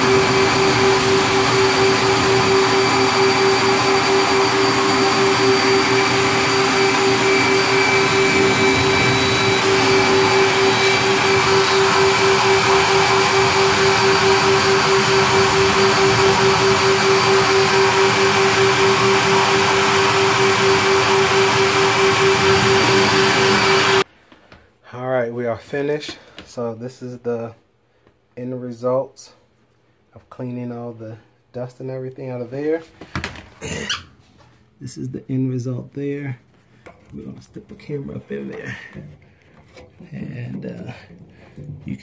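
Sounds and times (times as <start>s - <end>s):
vacuum rushing air: 0.0s - 24.1s.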